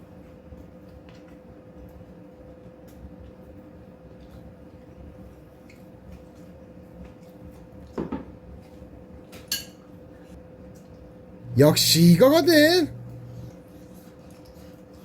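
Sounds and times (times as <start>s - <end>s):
faint steady hum: 11.0s - 14.3s.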